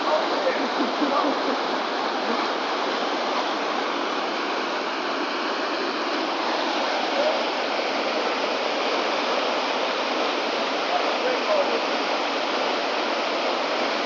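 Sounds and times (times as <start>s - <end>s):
river rapids rushing: 0.0s - 14.0s.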